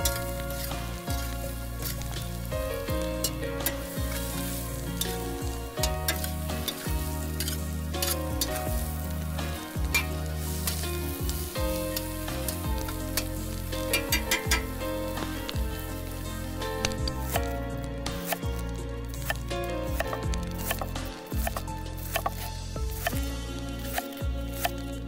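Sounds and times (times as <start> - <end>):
background music: 0.0 - 25.0
food sizzling in a pan: 0.0 - 25.0
utensil clicking against pan: 13.9 - 14.6.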